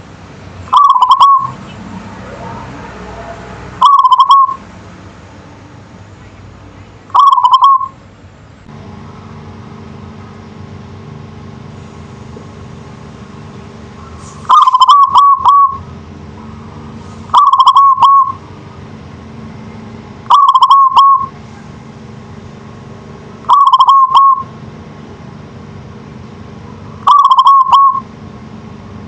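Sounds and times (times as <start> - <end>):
dove cooing: 0.7 - 1.7, 3.8 - 4.6, 7.1 - 8.0, 14.5 - 15.8, 17.3 - 18.4, 20.3 - 21.4, 23.5 - 24.5, 27.0 - 28.1.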